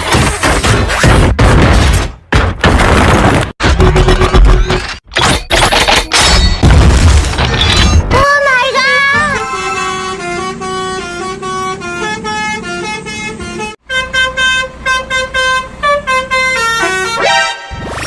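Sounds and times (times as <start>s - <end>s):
bus horn playing a tune: 9.2s - 17.8s.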